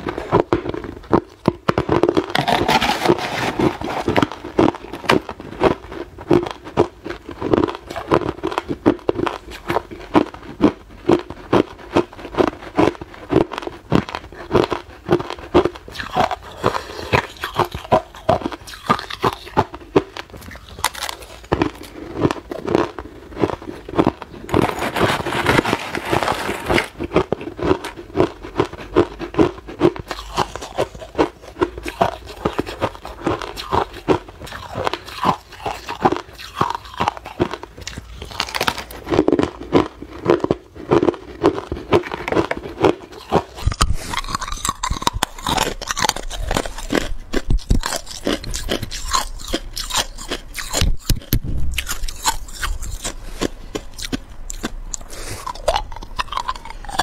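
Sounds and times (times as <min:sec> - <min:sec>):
ice being chewed: 0:00.0 - 0:57.0.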